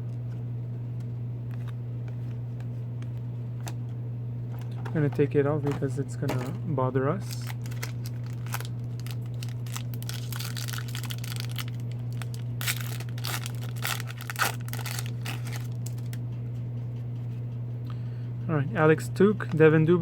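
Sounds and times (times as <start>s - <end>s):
steady low hum: 0.0s - 20.0s
wrapper tearing and crinkling: 7.2s - 16.2s.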